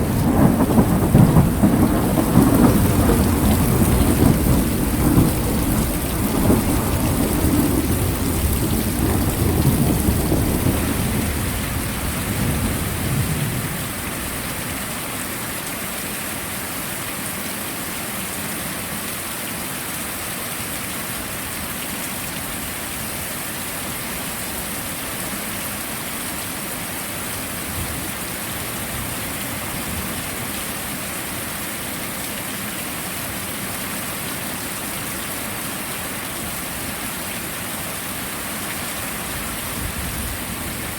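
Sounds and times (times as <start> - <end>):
low rumble of thunder: 0.0 - 14.9
heavy rain falling: 0.0 - 40.9.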